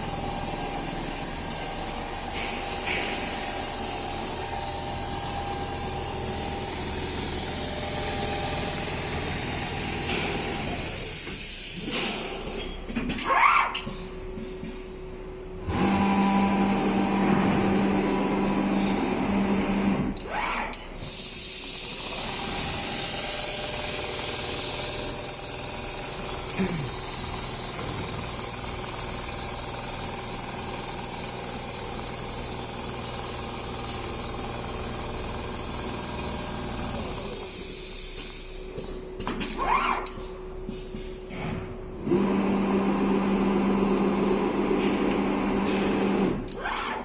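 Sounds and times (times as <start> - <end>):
sewing machine motor hum: 0.0 - 11.2, 15.6 - 20.7, 21.7 - 37.6, 42.0 - 47.0.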